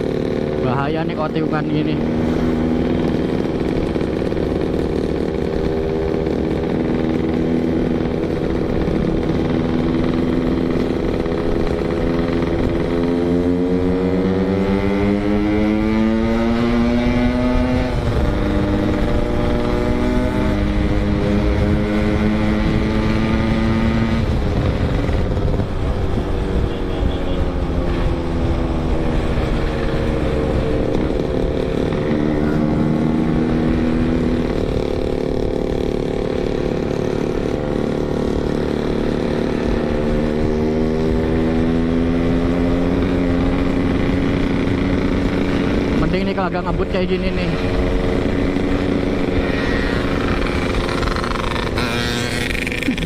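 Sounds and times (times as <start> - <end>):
motorcycle engine accelerating: 0.0 - 53.0
wind rumble on microphone: 17.7 - 32.6.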